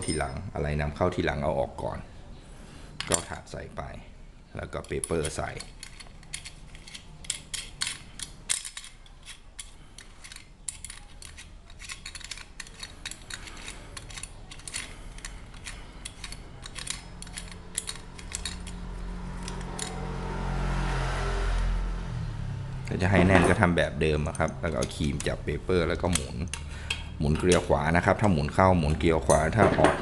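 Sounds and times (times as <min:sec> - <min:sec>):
metal parts clicking and scraping: 0:02.9 - 0:03.4, 0:04.8 - 0:20.2, 0:22.8 - 0:30.0
low hum: 0:09.6 - 0:28.2.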